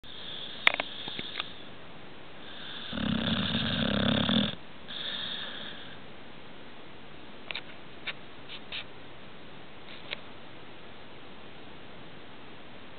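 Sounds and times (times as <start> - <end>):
pet snoring: 2.4 - 6.0.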